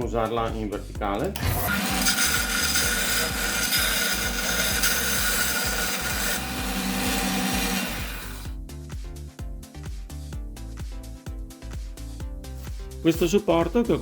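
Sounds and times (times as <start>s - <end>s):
belt sander motor: 1.4s - 8.6s
wood sanding rasp: 1.6s - 8.5s.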